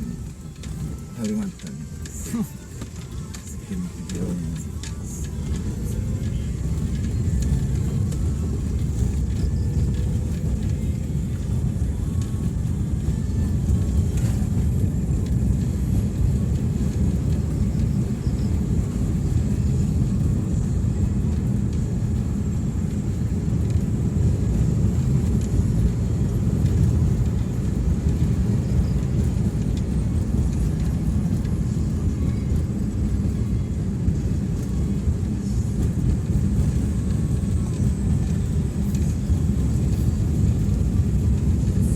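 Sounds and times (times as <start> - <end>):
vehicle engine and road noise: 0.0 - 41.9.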